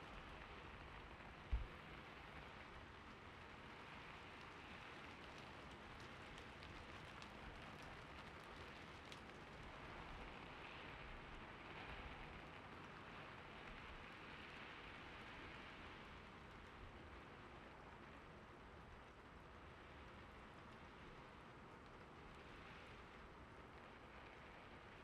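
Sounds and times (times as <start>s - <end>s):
faint steady rain: 0.0s - 25.0s
faint light ticks: 2.6s - 10.5s.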